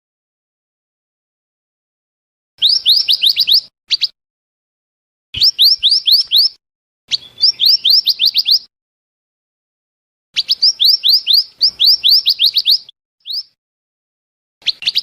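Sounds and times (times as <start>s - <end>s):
songbird chirps: 2.6s - 4.2s, 5.4s - 8.7s, 10.4s - 13.6s, 14.6s - 15.0s.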